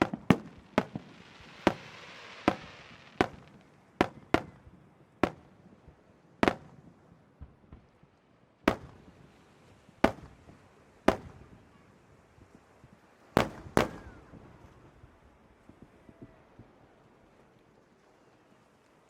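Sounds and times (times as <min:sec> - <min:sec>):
fireworks bangs with rumbling echo: 0:00.0 - 0:08.0, 0:08.7 - 0:09.4, 0:10.0 - 0:11.9, 0:13.4 - 0:16.9.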